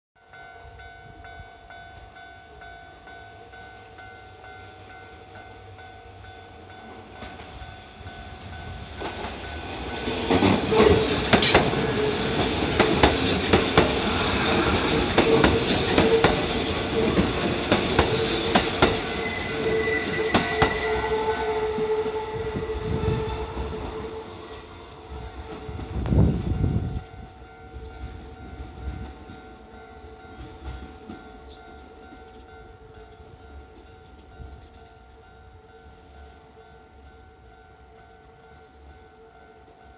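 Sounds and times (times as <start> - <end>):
crossing warning bell: 0.2 - 39.9
electric train passing: 0.2 - 39.9
wheels clacking over rail joints: 8.9 - 22.2.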